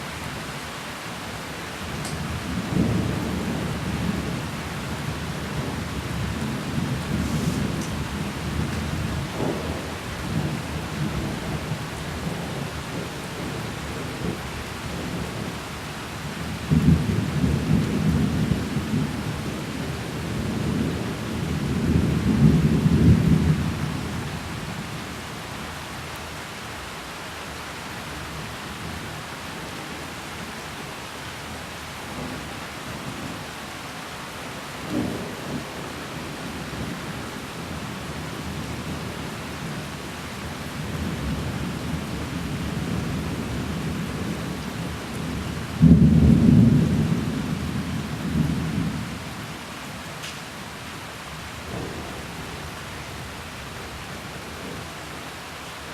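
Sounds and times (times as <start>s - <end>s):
steady rain: 0.0s - 55.9s
rolling thunder: 5.4s - 15.5s, 40.8s - 49.2s.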